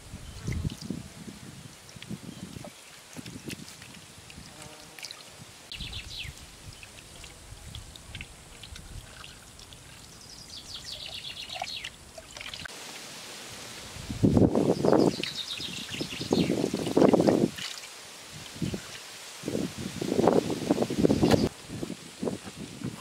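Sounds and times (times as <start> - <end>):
small birds chirping: 5.1 - 12.7, 14.6 - 17.1, 21.0 - 21.5.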